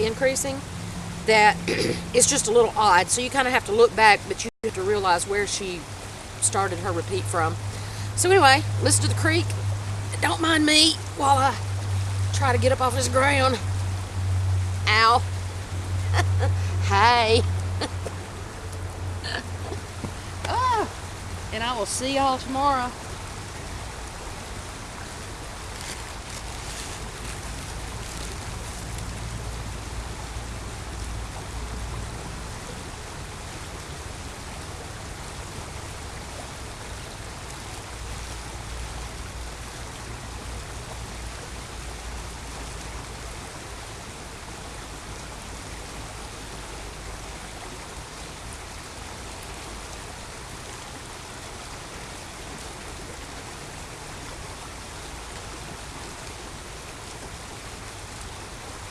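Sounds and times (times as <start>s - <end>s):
creek water running: 0.0s - 58.9s
low rumble: 11.0s - 21.6s.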